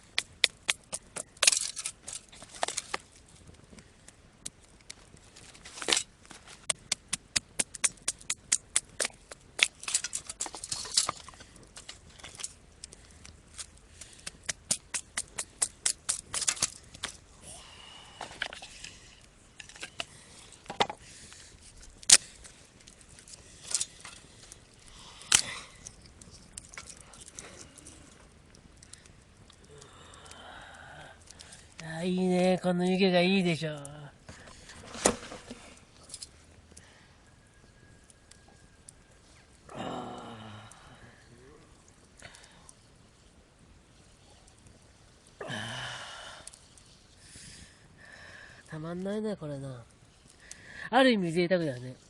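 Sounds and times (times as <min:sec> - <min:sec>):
dry sticks snapping: 0:00.0 - 0:17.3, 0:19.6 - 0:31.9.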